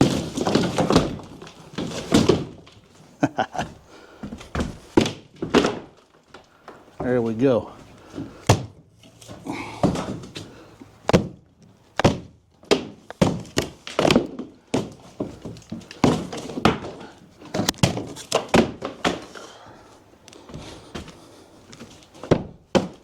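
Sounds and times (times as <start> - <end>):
pieces falling: 0.0 - 6.8
heavy thuds and cracks of wall: 0.0 - 7.2, 8.1 - 19.6, 20.4 - 23.0.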